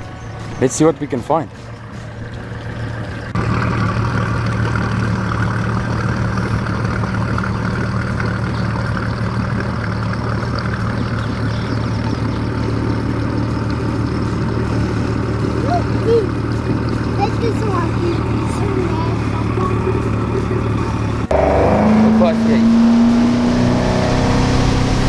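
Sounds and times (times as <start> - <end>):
motorboat engine humming: 0.0 - 25.0.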